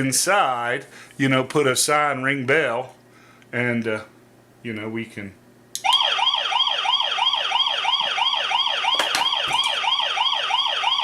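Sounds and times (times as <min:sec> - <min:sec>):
doorbell police siren chime: 0:05.8 - 0:11.0.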